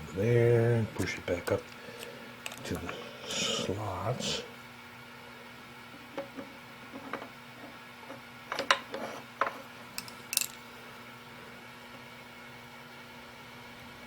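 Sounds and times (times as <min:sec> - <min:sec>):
faint steady hum: 0:00.0 - 0:14.0
metallic clicks and clinks: 0:10.0 - 0:10.6.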